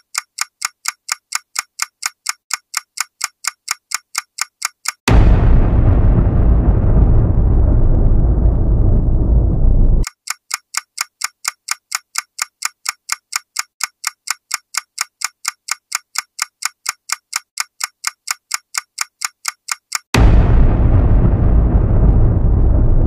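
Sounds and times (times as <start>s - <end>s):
clock ticking: 0.0s - 5.2s, 10.0s - 20.2s
explosion boom: 5.1s - 10.0s, 20.2s - 23.0s.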